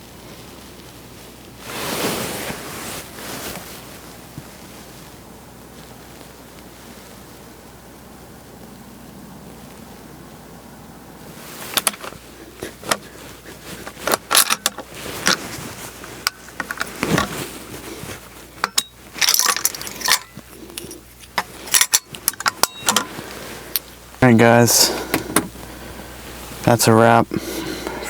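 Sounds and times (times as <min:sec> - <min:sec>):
gear clicking and clinking: 0:13.8 - 0:24.0.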